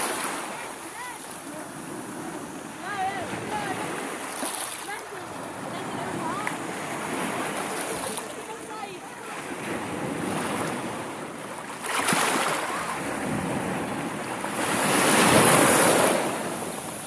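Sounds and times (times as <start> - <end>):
sea waves washing in: 0.0 - 17.0
wind buffeting microphone: 1.0 - 11.6.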